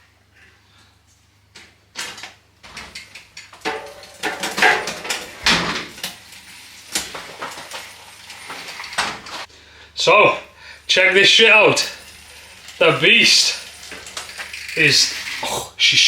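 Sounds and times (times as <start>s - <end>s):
mountain bike knocks and rattles: 1.6s - 9.5s.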